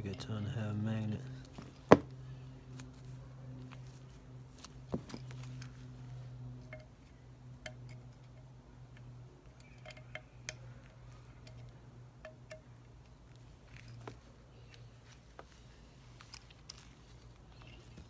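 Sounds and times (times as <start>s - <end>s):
steady low hum: 0.0s - 18.0s
light metallic clinks and taps: 4.6s - 5.8s, 6.5s - 13.1s.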